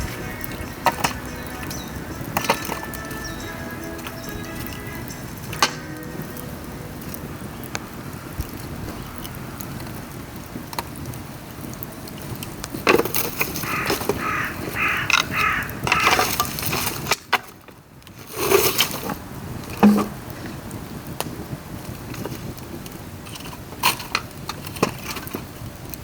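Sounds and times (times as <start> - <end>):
bamboo fire crackling: 0.0 - 26.0.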